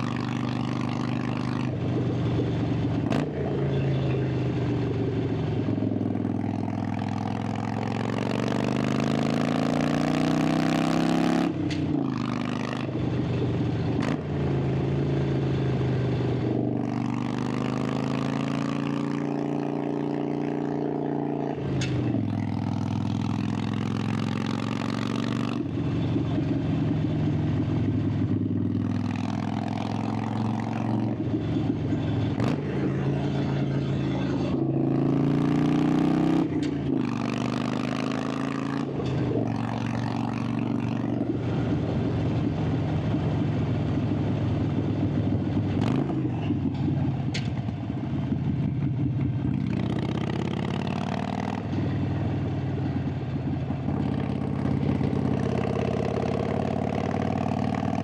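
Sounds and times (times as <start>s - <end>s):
motorcycle exhaust under throttle: 0.0s - 58.0s.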